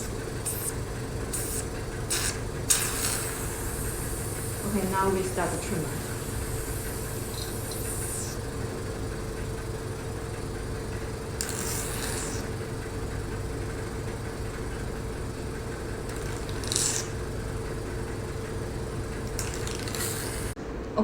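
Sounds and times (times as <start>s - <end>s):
suction hisses: 0.0s - 8.4s, 11.4s - 12.5s
vacuum pump humming: 0.0s - 20.8s.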